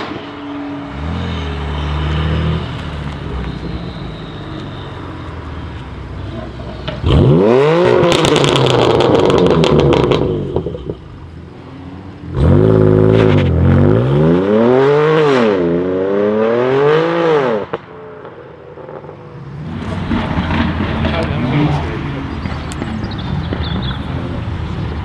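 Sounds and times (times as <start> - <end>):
car engine revving: 0.0 - 25.0
exhaust crackle: 0.9 - 14.2, 19.6 - 25.0.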